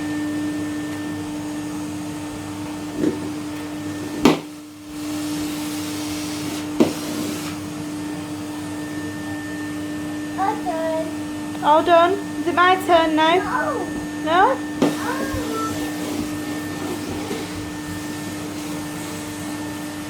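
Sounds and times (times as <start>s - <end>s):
toy vacuum motor humming: 13.0s - 17.8s.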